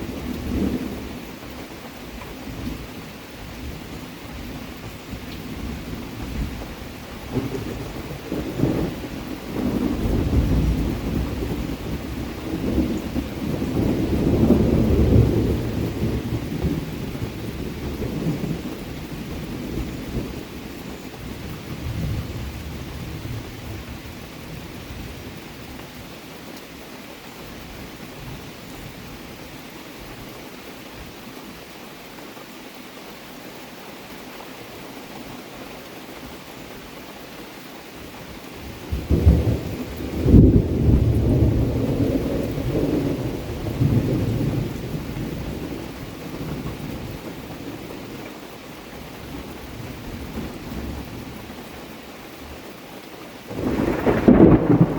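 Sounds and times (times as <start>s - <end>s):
thunder rumbling: 0.0s - 1.3s, 3.5s - 24.0s, 38.6s - 48.2s, 53.5s - 54.9s
steady rain: 0.0s - 54.9s.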